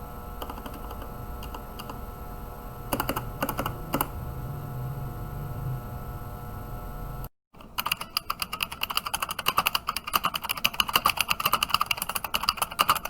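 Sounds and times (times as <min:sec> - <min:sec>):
steady hum: 0:00.0 - 0:07.3
mechanical keyboard typing: 0:00.4 - 0:02.0, 0:02.9 - 0:04.1, 0:07.6 - 0:13.0.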